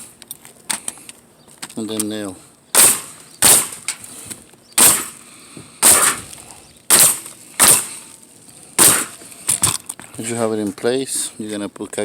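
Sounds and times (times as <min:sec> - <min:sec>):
pneumatic nailer firing with hiss: 0:02.8 - 0:04.0, 0:04.8 - 0:05.2, 0:05.8 - 0:06.3, 0:06.9 - 0:08.0, 0:08.8 - 0:09.2.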